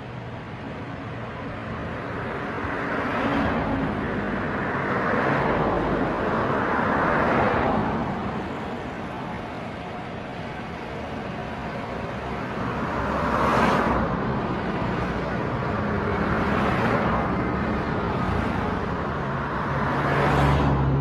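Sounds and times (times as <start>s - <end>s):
vehicle passing by: 19.8s - 21.0s.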